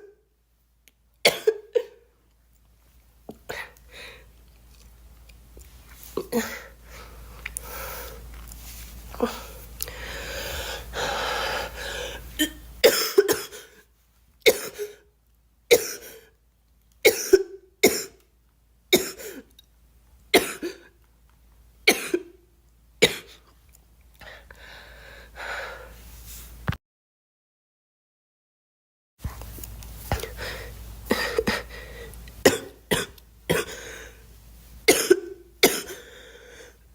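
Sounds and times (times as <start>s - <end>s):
girl coughing: 1.3s - 2.0s, 12.4s - 13.8s, 14.5s - 15.1s, 15.7s - 16.3s, 17.1s - 18.2s, 19.0s - 19.5s, 20.4s - 20.9s, 21.9s - 22.4s, 23.0s - 23.4s, 32.4s - 33.9s, 34.9s - 36.1s
girl breathing: 9.1s - 12.4s, 24.2s - 26.5s, 30.1s - 32.2s, 33.6s - 34.3s, 35.9s - 36.8s.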